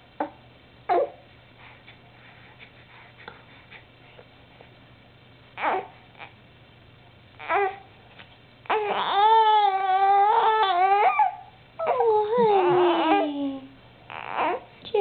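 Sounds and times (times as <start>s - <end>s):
baby crying: 5.6s - 6.4s, 7.4s - 7.8s, 8.7s - 14.7s.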